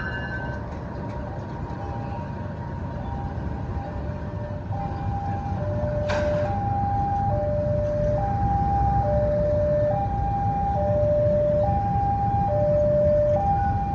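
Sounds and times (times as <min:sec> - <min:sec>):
level-crossing alarm tones: 0:00.0 - 0:00.7, 0:04.6 - 0:13.9.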